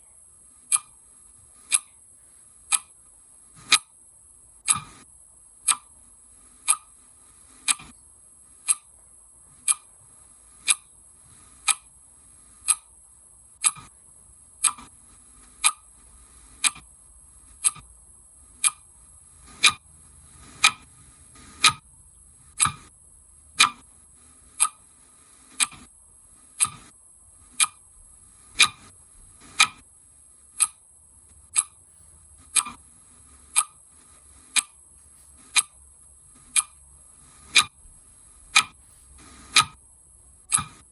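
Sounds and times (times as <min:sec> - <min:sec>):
clock ticking: 0:00.6 - 0:01.0, 0:01.6 - 0:02.0, 0:02.7 - 0:03.0, 0:03.6 - 0:03.9, 0:04.6 - 0:05.0, 0:05.6 - 0:06.0, 0:06.6 - 0:07.0, 0:07.6 - 0:08.0, 0:08.6 - 0:09.0, 0:09.6 - 0:09.9, 0:10.6 - 0:11.9, 0:12.6 - 0:13.0, 0:13.6 - 0:14.0, 0:14.6 - 0:16.0, 0:16.6 - 0:16.9, 0:17.6 - 0:17.9, 0:18.6 - 0:19.9, 0:20.5 - 0:21.9, 0:22.5 - 0:22.9, 0:23.5 - 0:23.9, 0:24.5 - 0:24.9, 0:25.5 - 0:25.9, 0:26.6 - 0:26.9, 0:27.5 - 0:29.9, 0:30.5 - 0:37.9, 0:38.5 - 0:40.9.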